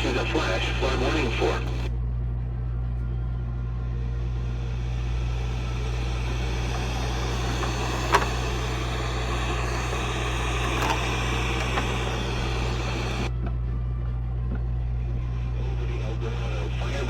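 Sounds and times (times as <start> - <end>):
radio static hiss: 0.0 - 2.0, 4.2 - 13.3, 15.5 - 17.0
low hum: 0.0 - 17.0
faint crackles: 0.1 - 1.9, 4.7 - 13.3.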